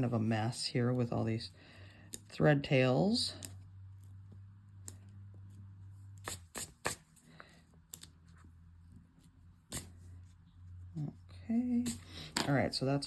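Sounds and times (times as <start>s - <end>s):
scissors snipping thread: 2.1s - 2.4s, 3.4s - 3.6s, 7.8s - 8.2s.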